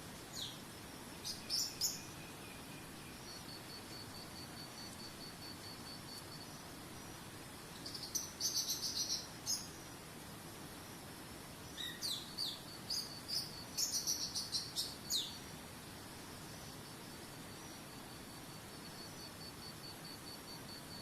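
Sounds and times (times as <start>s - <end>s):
songbird chirping and whistling: 11.8s - 15.4s.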